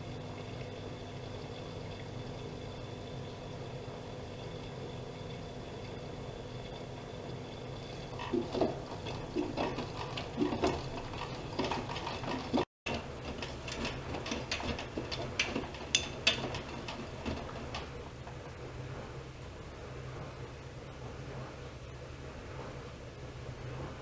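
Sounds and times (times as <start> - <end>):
washing machine humming: 0.0 - 24.0
mechanical clicks and clacks: 8.2 - 18.5.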